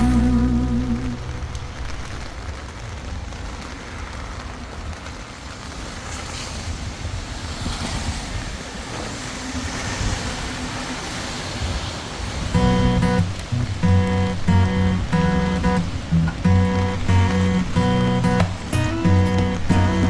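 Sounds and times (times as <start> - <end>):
steady rain: 0.0 - 20.0
wind buffeting microphone: 4.6 - 20.0.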